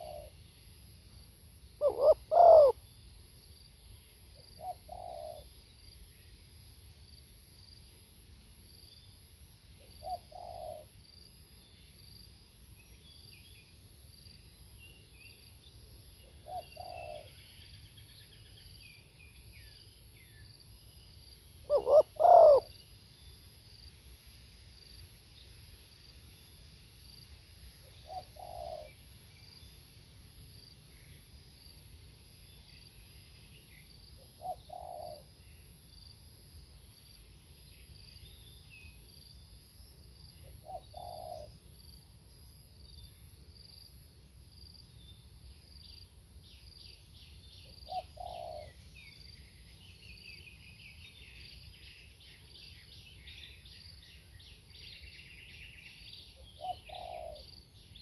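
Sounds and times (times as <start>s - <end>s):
dove cooing: 0.0s - 0.3s, 1.8s - 2.8s, 4.6s - 5.4s, 10.0s - 10.9s, 16.4s - 17.3s, 21.7s - 22.7s, 28.0s - 29.0s, 34.4s - 35.3s, 40.6s - 41.5s, 47.8s - 48.8s, 56.6s - 57.5s
insects trilling: 1.6s - 6.4s, 10.0s - 58.0s.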